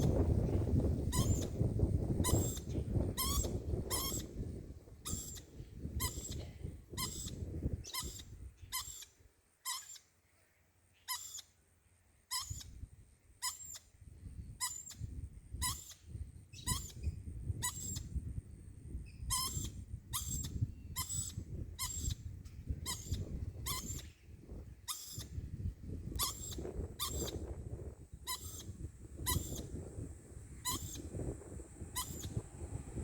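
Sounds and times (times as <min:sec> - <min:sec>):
lorikeet squeaky calls: 0:01.1 - 0:01.6, 0:02.2 - 0:04.4, 0:05.0 - 0:10.1, 0:11.0 - 0:11.5, 0:12.3 - 0:12.8, 0:13.4 - 0:13.9, 0:14.6 - 0:18.1, 0:19.0 - 0:24.2, 0:24.8 - 0:25.4, 0:26.2 - 0:27.4, 0:28.2 - 0:29.7, 0:30.6 - 0:31.2, 0:31.9 - 0:32.4
low rumbling noise: 0:30.0 - 0:33.0.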